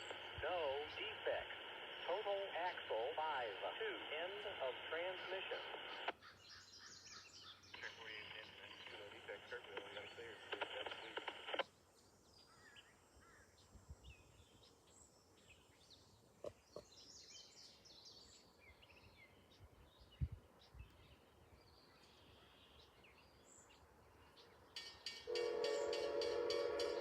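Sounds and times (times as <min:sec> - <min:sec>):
birds chirping: 0:00.0 - 0:27.0
locomotive horn: 0:25.3 - 0:27.0.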